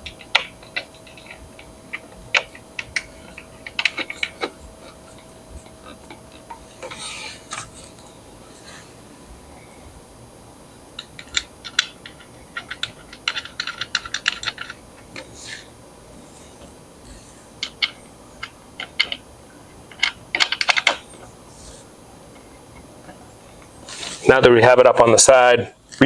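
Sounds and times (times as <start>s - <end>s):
metal hardware clicking and rattling: 0.0s - 7.8s, 11.0s - 15.3s.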